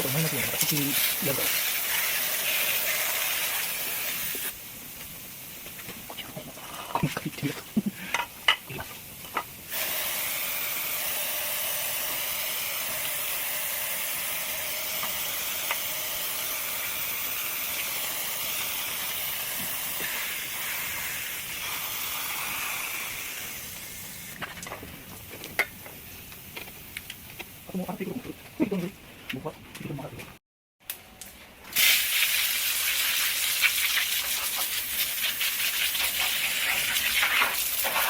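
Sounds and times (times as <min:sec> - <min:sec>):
hissing spray: 0:00.0 - 0:05.6, 0:09.6 - 0:24.4, 0:31.7 - 0:38.0.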